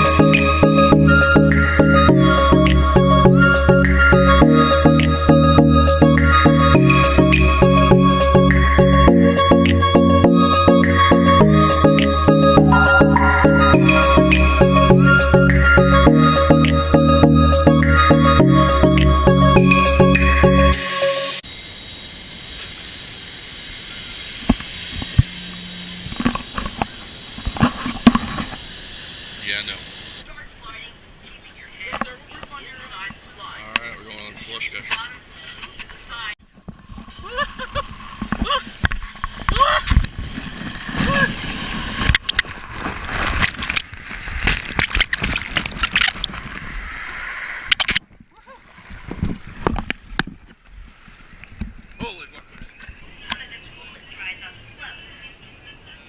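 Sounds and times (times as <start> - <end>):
steady hiss: 20.8 - 30.4
muffled water rushing and splashing: 37.9 - 52.0.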